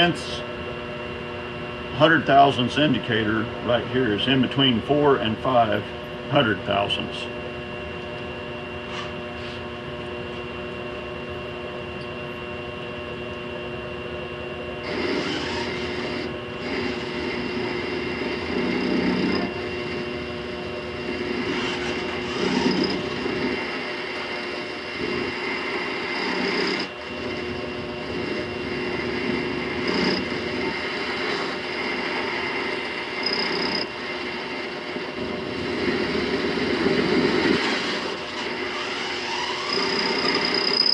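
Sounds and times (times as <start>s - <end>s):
lathe motor humming: 14.5s - 40.9s
lathe tool cutting steel: 14.8s - 40.9s.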